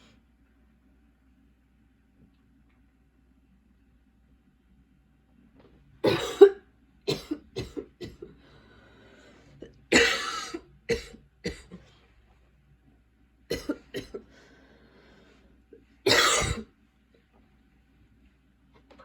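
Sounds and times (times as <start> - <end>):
girl coughing: 6.0 - 8.3, 9.9 - 11.8, 13.5 - 14.2, 16.1 - 16.7.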